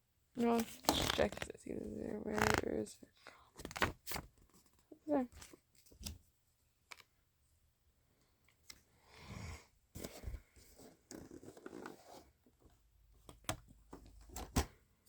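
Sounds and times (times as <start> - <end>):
plastic and paper wrappers rustling: 0.4 - 2.9.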